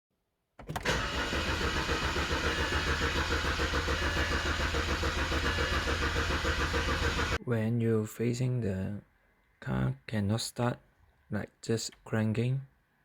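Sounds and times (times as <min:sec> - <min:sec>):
engine cranking without starting: 0:00.6 - 0:07.4.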